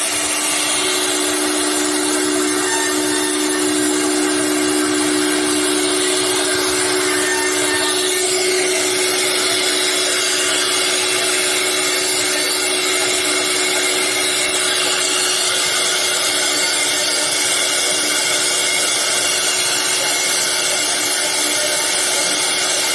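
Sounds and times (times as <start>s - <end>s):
router spindle whine: 0.0s - 22.9s.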